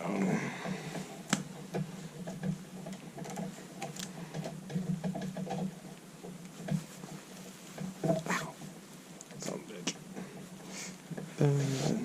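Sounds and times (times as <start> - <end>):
wire being handled clicking: 0.9 - 8.4.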